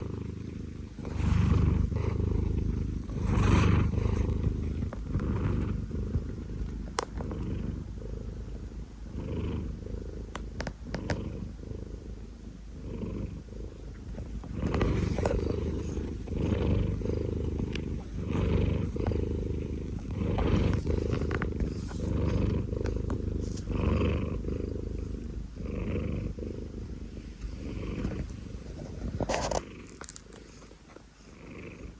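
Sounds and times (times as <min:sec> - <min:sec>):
cat snoring: 0:00.0 - 0:31.9.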